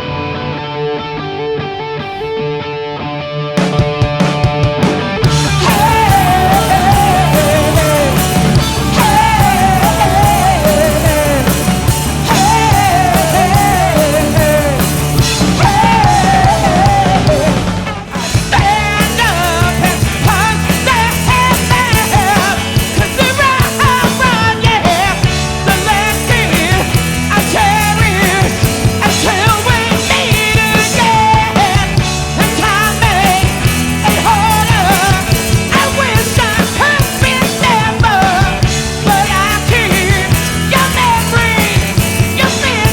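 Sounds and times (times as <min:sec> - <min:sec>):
live rock band playing: 0:00.0 - 0:42.9
wavering lead guitar line: 0:00.0 - 0:42.9.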